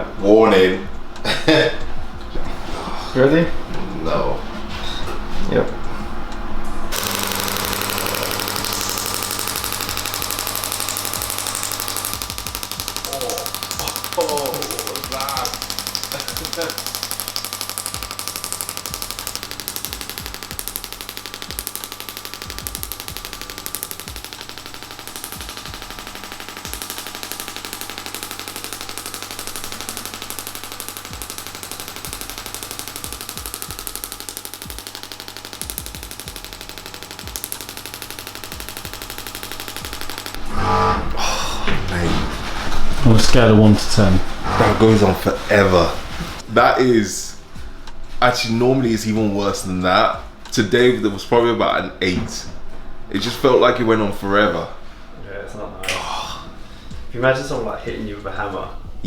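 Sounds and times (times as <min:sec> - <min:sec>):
steady machine hum: 0:00.0 - 0:55.2
sharp clicking pulses: 0:05.7 - 0:46.8.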